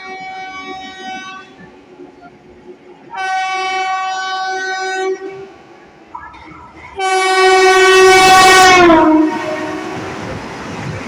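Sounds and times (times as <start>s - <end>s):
locomotive horn blast: 0.0s - 1.6s, 3.1s - 10.3s
train rushing by: 0.0s - 11.0s.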